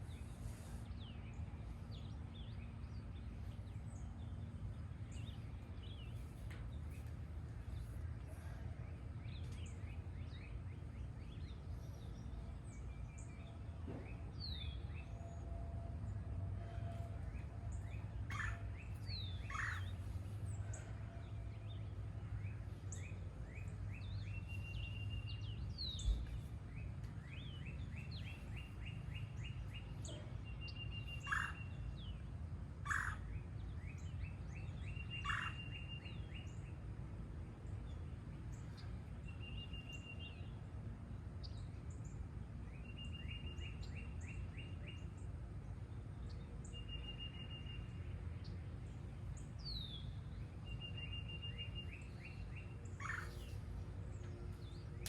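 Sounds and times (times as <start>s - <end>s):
low background rumble: 0.0s - 35.5s
birds singing and calling: 17.3s - 32.3s, 32.9s - 36.8s, 46.2s - 55.0s.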